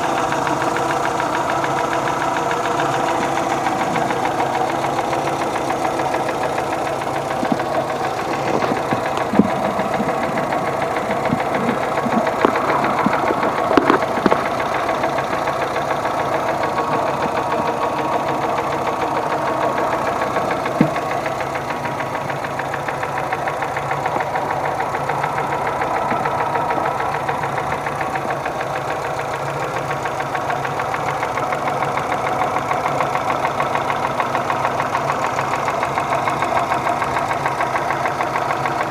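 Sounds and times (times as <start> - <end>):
engine running: 0.0 - 38.9
rhythmic engine knock: 0.0 - 38.9
sharp clicks: 7.3 - 15.4.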